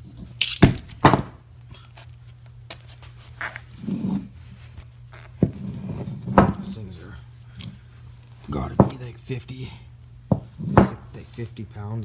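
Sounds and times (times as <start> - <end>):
quiet thuds: 10.3 - 11.2.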